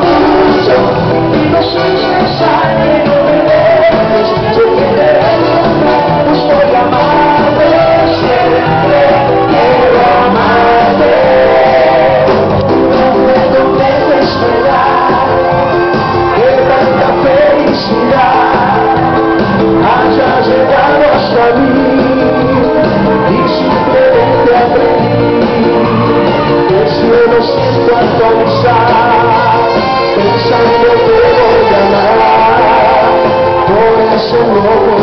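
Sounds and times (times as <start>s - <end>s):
band playing: 0.0s - 35.0s
people singing: 0.0s - 35.0s.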